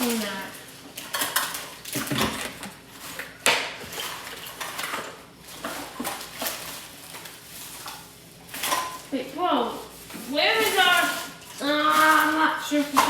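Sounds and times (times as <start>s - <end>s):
small hard objects clattering: 0.0s - 13.0s.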